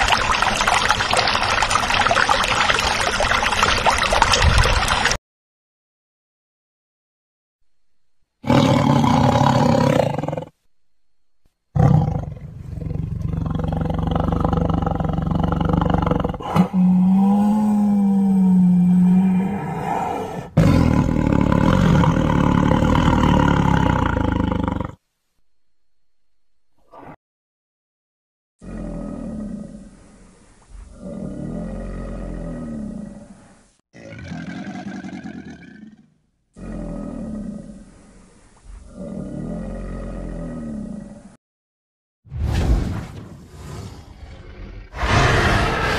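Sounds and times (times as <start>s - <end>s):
big cat roaring: 8.4s - 10.5s, 11.8s - 25.0s, 28.6s - 33.4s, 34.0s - 41.3s, 43.6s - 45.9s.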